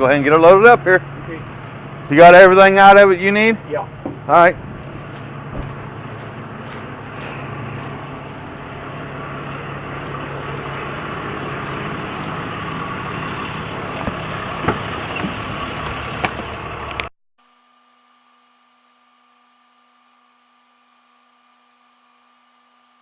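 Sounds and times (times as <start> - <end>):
truck engine running: 0.0 - 17.1.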